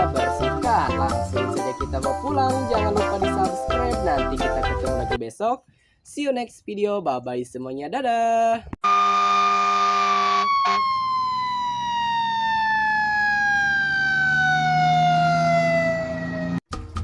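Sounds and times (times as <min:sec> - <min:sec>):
siren winding down: 0:08.8 - 0:16.6.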